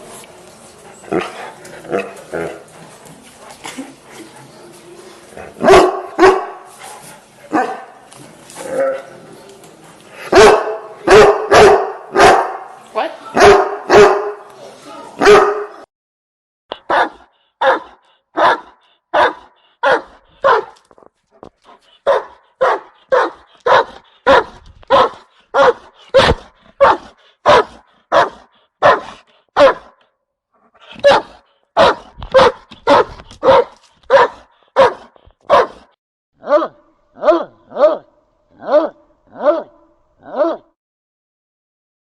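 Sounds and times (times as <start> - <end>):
dog barking: 5.6 - 6.7, 7.5 - 7.9, 10.3 - 12.7, 13.4 - 14.4, 15.2 - 15.9, 16.8 - 20.8, 22.0 - 30.0, 31.0 - 40.7.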